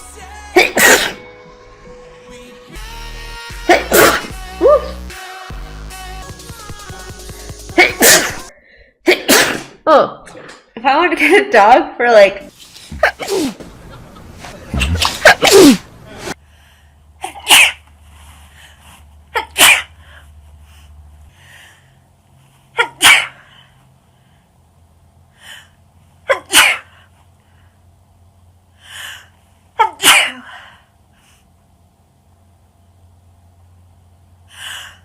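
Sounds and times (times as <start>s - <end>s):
person sneezing: 0.6s - 1.2s, 3.7s - 4.9s, 7.8s - 9.8s, 12.9s - 13.6s, 14.6s - 16.4s, 17.2s - 17.9s, 19.3s - 20.0s, 22.7s - 23.5s, 26.2s - 27.0s, 29.8s - 30.7s
faint breaths: 16.1s - 17.2s, 18.0s - 19.2s, 19.9s - 22.8s.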